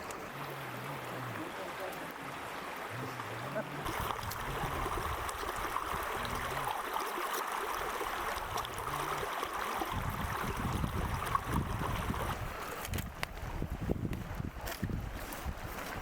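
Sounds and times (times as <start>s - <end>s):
water flowing over rocks: 0.0s - 16.0s
wind rumble on microphone: 9.8s - 16.0s.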